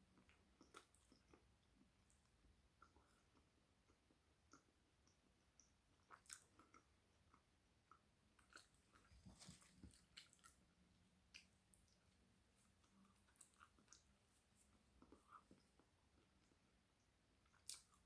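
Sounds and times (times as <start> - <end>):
chewing flatbread crunches: 0.1 - 16.4, 17.4 - 18.0.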